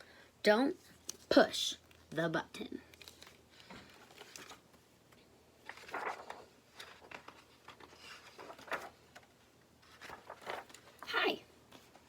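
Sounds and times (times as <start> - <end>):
book page turning rustle: 2.9 - 12.0.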